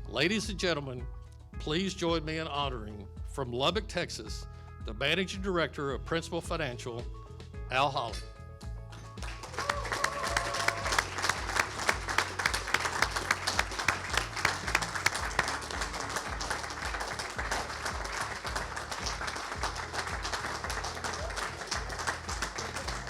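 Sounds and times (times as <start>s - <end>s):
music with bass beat: 0.0s - 23.0s
audience applauding: 9.2s - 23.0s.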